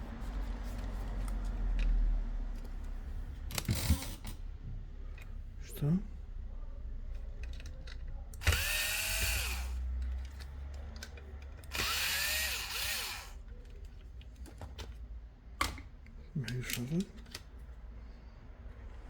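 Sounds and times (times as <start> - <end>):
nail drill motor whining: 8.4 - 9.8, 11.7 - 13.4.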